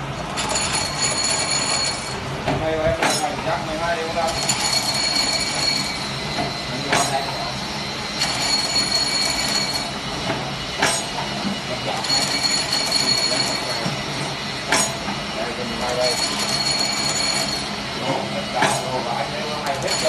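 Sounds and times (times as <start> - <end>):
machine clacking: 0.3 - 3.6, 4.2 - 7.5, 8.2 - 20.0
cutting machine whine: 3.0 - 20.0.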